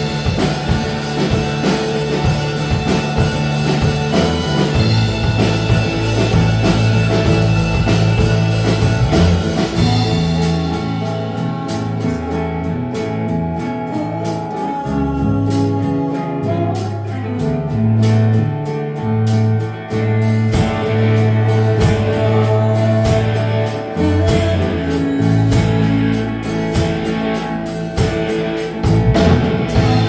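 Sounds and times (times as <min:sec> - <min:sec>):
bass line: 0:00.0 - 0:30.0
drums: 0:00.0 - 0:30.0
guitars: 0:00.0 - 0:30.0.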